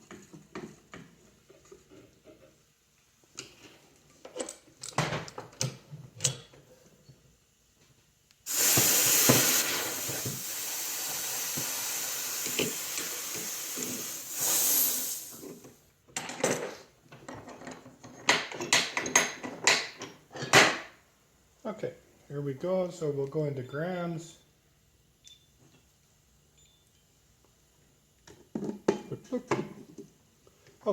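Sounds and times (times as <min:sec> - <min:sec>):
pressurised gas hissing out: 0:08.5 - 0:15.8.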